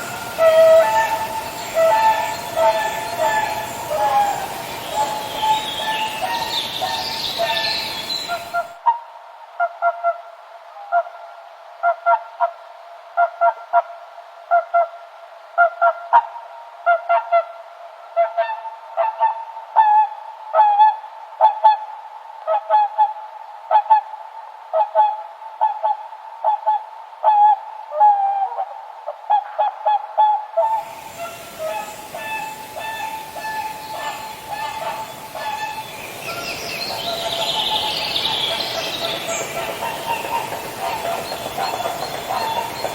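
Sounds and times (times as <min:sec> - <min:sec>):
swans honking: 0:00.0 - 0:08.6, 0:30.8 - 0:42.9
rumble and hiss: 0:00.0 - 0:09.6, 0:30.6 - 0:42.9.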